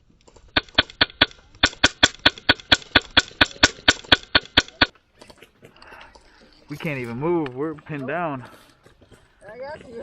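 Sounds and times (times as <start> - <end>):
airsoft rifle firing rapidly: 0.5 - 4.9.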